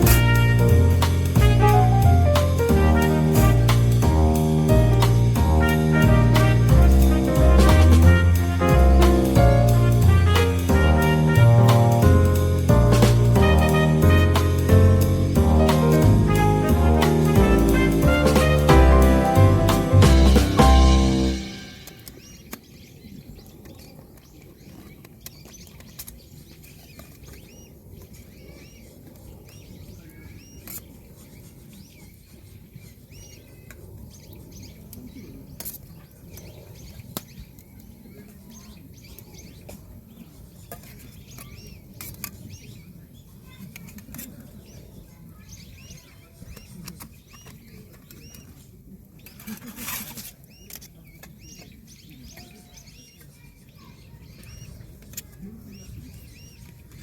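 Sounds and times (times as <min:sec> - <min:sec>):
small birds chirping: 0:20.2 - 0:57.0
rustle: 0:49.2 - 0:51.1.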